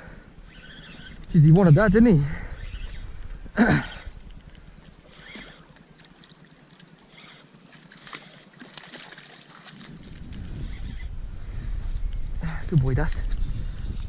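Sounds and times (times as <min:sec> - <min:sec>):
water trickling and splashing: 0:04.2 - 0:10.8.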